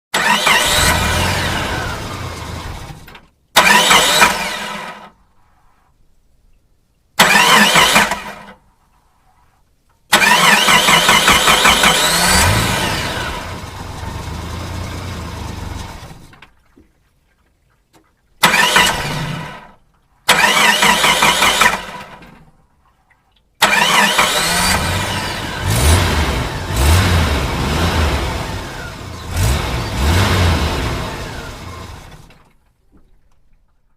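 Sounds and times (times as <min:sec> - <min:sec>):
engine starting and revving: 0:00.1 - 0:05.2, 0:07.2 - 0:08.6, 0:10.1 - 0:16.4, 0:18.4 - 0:22.3, 0:23.6 - 0:32.5.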